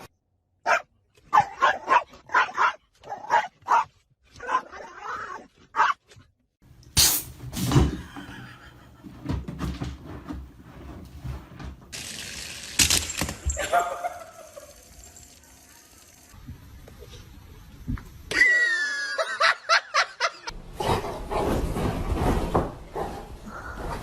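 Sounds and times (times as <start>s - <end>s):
dog barking and yipping: 0.6s - 6.1s, 13.5s - 14.7s
rustling and knocking: 7.6s - 11.9s.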